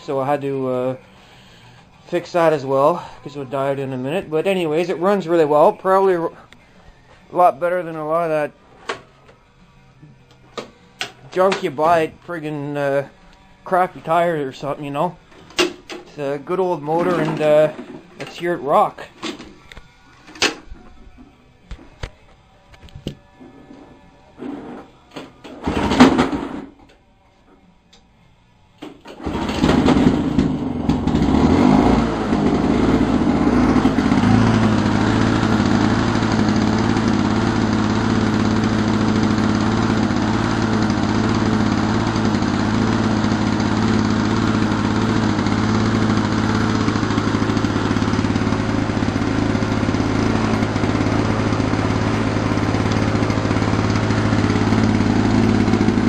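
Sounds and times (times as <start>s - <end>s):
lawn mower engine starting and running: 0.0s - 6.2s, 10.5s - 19.4s, 25.4s - 26.6s, 29.0s - 56.0s.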